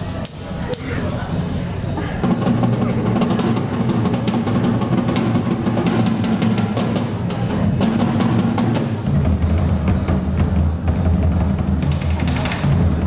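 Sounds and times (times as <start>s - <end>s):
deep heavy drums: 1.1s - 13.0s
rapid drum strikes: 2.2s - 13.0s.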